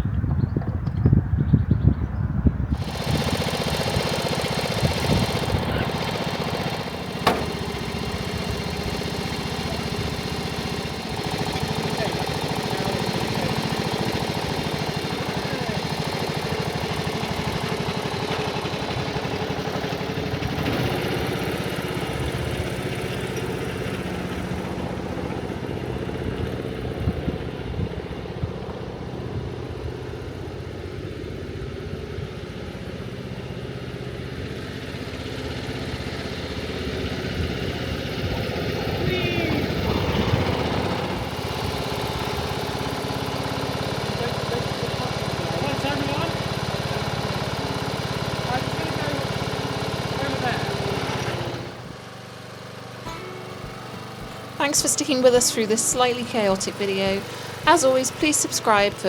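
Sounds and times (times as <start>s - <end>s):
ride-on lawn mower engine idling: 2.7s - 59.0s.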